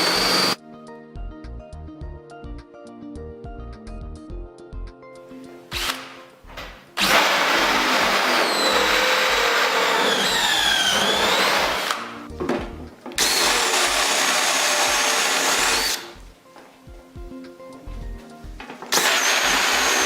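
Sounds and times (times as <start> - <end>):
power tool motor whining: 0.0 - 0.6, 7.0 - 12.0, 13.2 - 16.2, 18.9 - 20.0.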